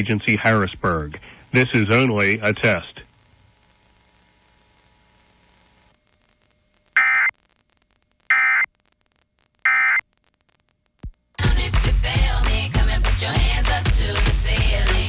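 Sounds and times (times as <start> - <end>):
faint steady hum: 0.0 - 15.0
buzzy digital tone bursts: 7.0 - 7.3.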